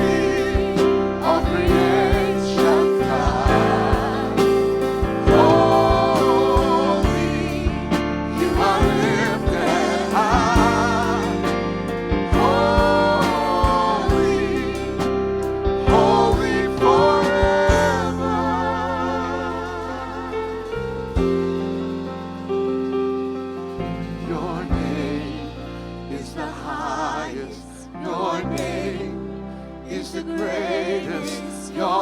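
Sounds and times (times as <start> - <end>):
person singing hymn with vibrato: 0.0 - 22.2, 23.8 - 32.0
instrumental backing with bass: 0.0 - 32.0.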